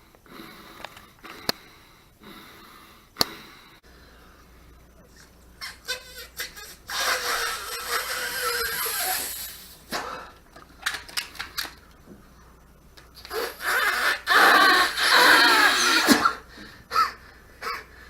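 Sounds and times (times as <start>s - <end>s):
rubber balloon squeaking: 5.6s - 9.9s, 13.2s - 16.4s.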